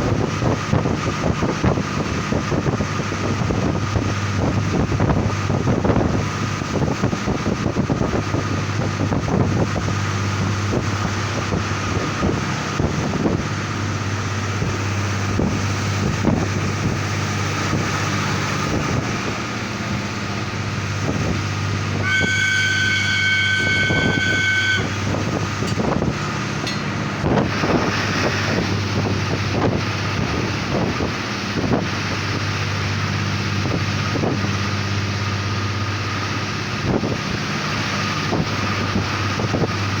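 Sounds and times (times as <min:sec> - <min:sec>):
diesel railcar engine drone: 0:00.0 - 0:40.0
wind on microphone: 0:00.0 - 0:40.0
high steady tone: 0:17.3 - 0:29.1.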